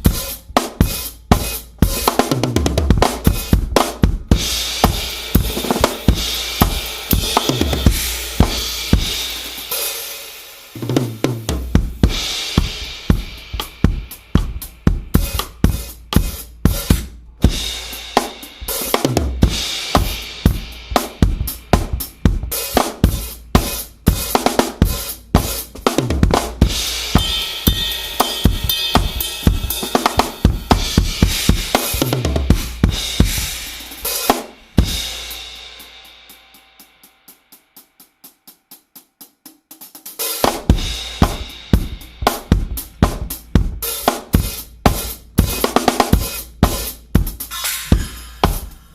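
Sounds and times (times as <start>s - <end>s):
drum kit playing fast groove: 0.0s - 48.9s
light drum strokes: 10.8s - 36.0s.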